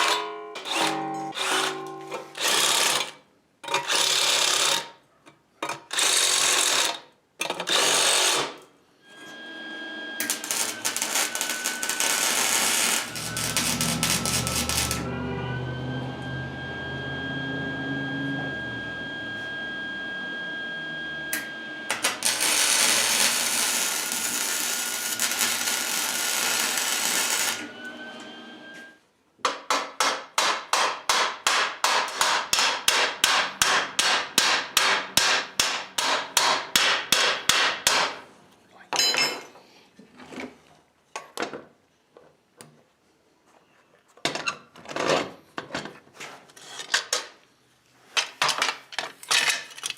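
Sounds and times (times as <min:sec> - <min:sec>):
power tool cutting sheet metal: 0:00.0 - 0:03.2, 0:03.8 - 0:04.9, 0:07.6 - 0:20.7, 0:21.3 - 0:28.8
power tool whining: 0:09.0 - 0:28.9.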